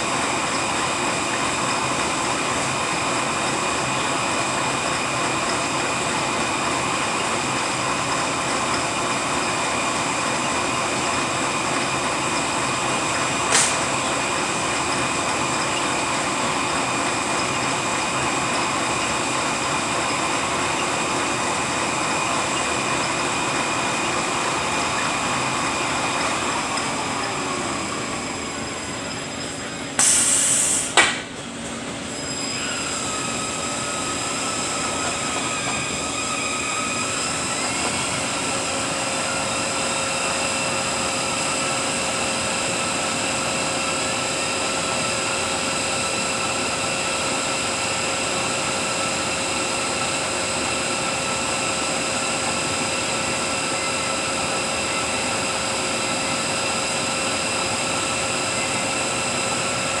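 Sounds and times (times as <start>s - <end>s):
hiss: 13.5s - 13.9s, 30.0s - 31.2s
gearbox mechanical whine: 31.1s - 60.0s.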